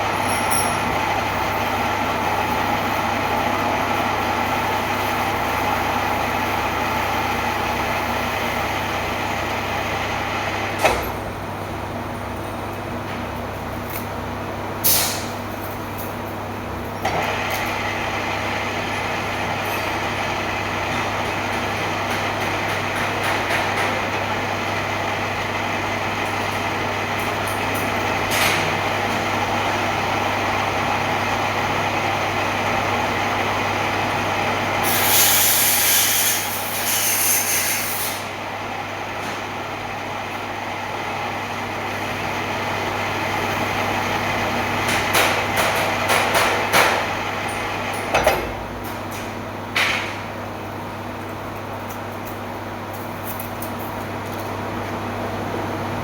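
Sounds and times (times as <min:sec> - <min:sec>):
lathe machine humming: 0:00.0 - 0:12.1, 0:16.5 - 0:51.2
loud hiss: 0:34.8 - 0:38.3.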